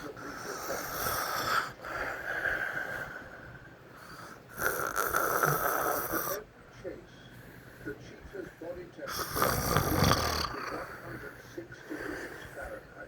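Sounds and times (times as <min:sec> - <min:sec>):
boy snoring: 0:00.0 - 0:01.8, 0:04.5 - 0:06.4, 0:09.1 - 0:10.8.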